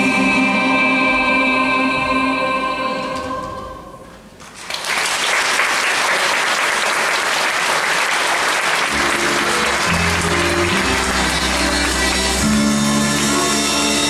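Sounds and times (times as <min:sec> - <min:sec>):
audience applauding: 0:04.5 - 0:13.5.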